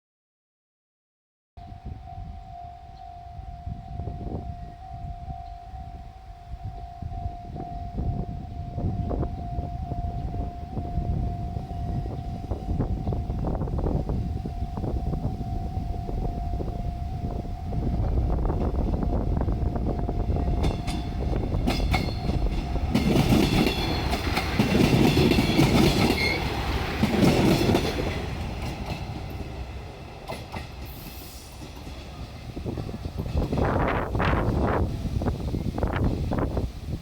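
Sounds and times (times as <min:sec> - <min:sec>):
level crossing warning bell: 0:01.6 - 0:29.6
diesel railcar passing: 0:01.6 - 0:37.0
wheels clicking over rail joints: 0:18.4 - 0:34.6.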